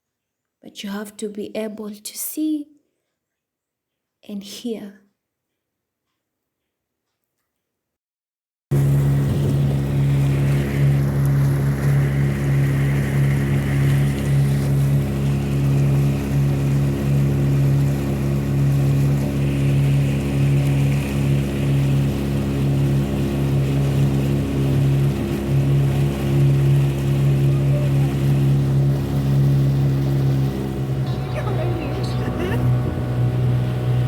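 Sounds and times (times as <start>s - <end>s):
boat engine humming: 8.7s - 34.0s.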